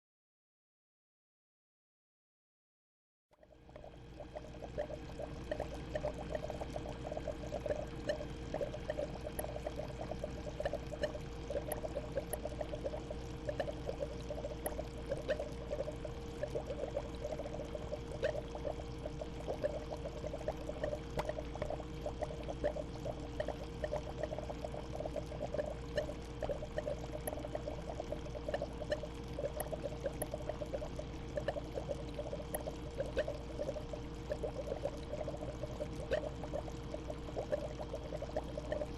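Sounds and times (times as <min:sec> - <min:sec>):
aquarium water bubbling: 0:03.4 - 0:38.9
steady hum: 0:03.4 - 0:38.9.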